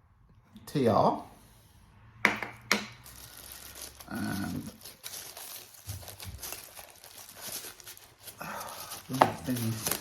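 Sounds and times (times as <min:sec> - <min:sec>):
handling rustling and clicks: 0:04.7 - 0:10.0.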